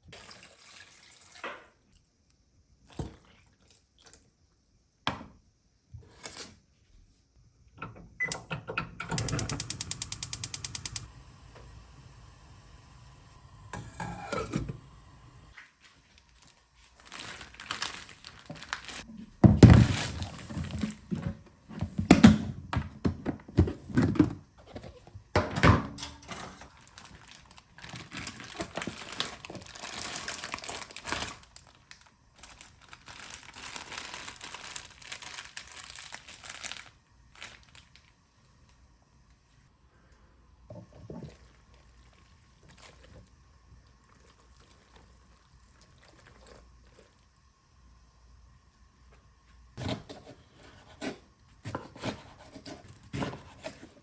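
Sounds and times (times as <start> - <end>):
crinkling and rustling: 9.2 - 25.2, 25.8 - 38.2.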